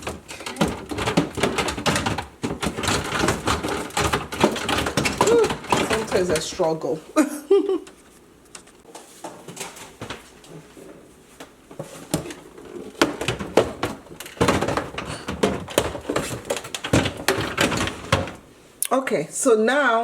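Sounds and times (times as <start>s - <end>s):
containers knocking on fridge shelves: 0.0s - 6.8s, 11.8s - 18.5s.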